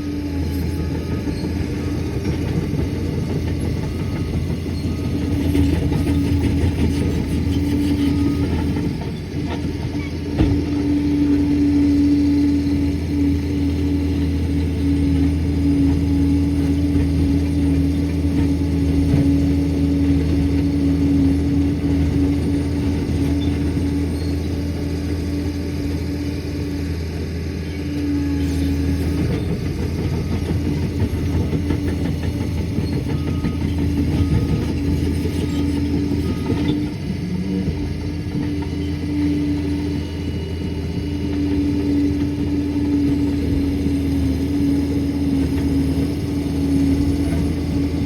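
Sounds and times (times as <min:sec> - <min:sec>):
diesel engine droning: 0:00.0 - 0:48.0.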